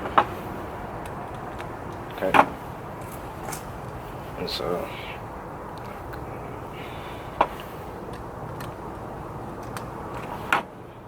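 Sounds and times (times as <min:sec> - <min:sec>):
steady background hiss: 0:00.0 - 0:11.0
sharp clicks: 0:08.1 - 0:10.7.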